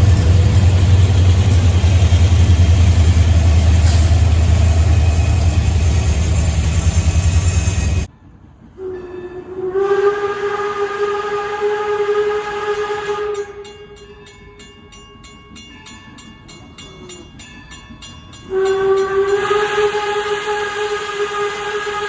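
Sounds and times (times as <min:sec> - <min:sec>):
train horn blast: 0:08.8 - 0:13.7, 0:18.5 - 0:22.0.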